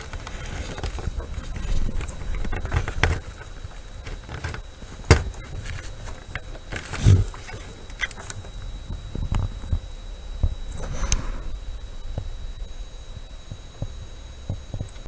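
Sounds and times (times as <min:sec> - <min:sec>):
low rumble: 0:00.0 - 0:05.5, 0:07.0 - 0:14.9.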